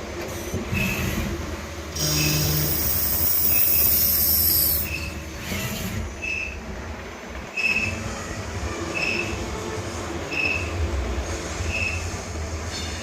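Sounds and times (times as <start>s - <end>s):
loud hiss: 2.0s - 5.1s
short high squeaks: 2.0s - 6.6s, 7.6s - 8.0s, 8.9s - 9.4s.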